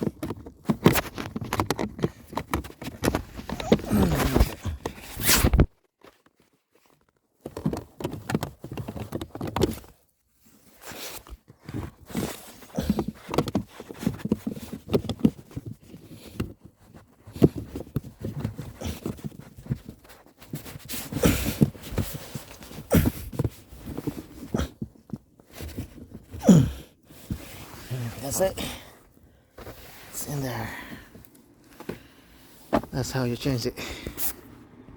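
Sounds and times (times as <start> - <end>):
plastic knocks and clicks: 0.0 - 3.8.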